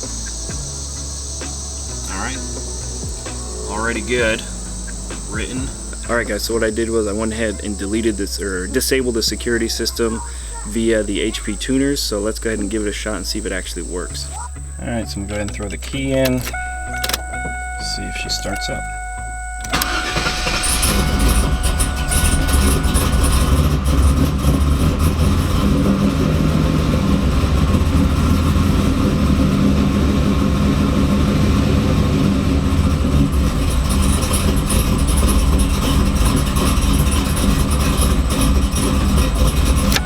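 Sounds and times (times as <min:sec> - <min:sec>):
car engine idling: 0:00.0 - 0:40.0
car engine starting: 0:00.0 - 0:40.0.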